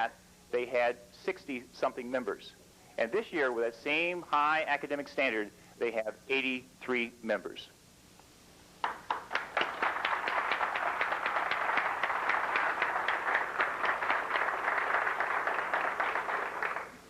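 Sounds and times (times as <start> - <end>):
audience applauding: 8.8 - 17.0.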